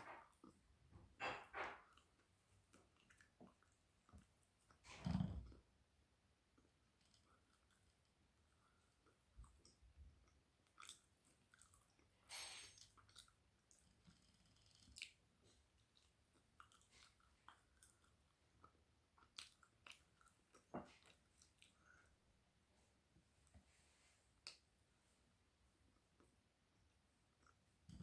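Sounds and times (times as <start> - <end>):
mouth chewing sounds: 8.6 - 22.0.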